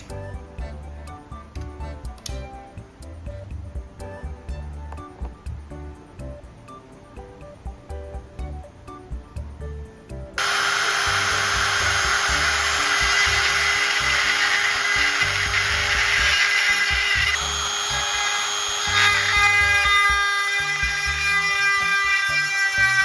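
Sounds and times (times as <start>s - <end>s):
background music with low beat: 0.0s - 23.0s
power tool whining: 10.4s - 23.0s.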